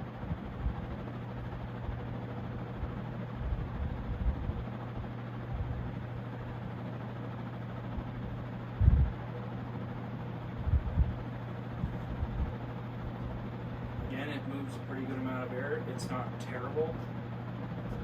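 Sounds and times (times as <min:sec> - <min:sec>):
ceiling fan motor hum: 0:00.0 - 0:18.0
rush of air from fan: 0:00.0 - 0:18.0
short low thumps: 0:08.8 - 0:09.2, 0:10.6 - 0:11.2.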